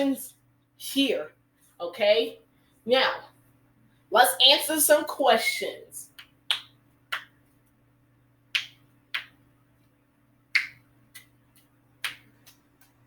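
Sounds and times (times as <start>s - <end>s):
faint steady hum: 0.0s - 13.0s
sharp snapping clicks: 10.5s - 12.6s.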